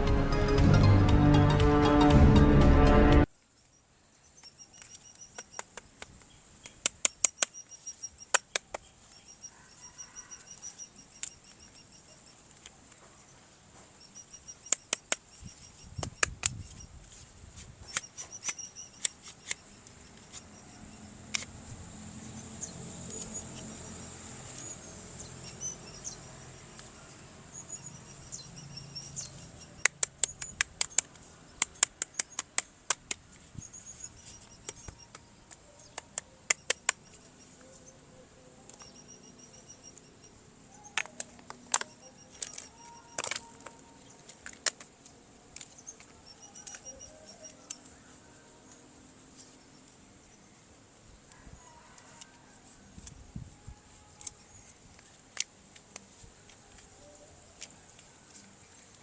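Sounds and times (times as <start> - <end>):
faint high chirping: 6.3 - 17.2, 17.8 - 32.4, 33.4 - 54.9
sharp clicks and taps: 29.7 - 33.4.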